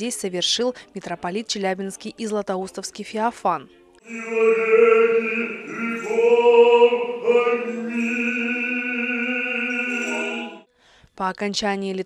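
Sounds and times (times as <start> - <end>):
voices chanting long held notes: 4.0 - 10.7.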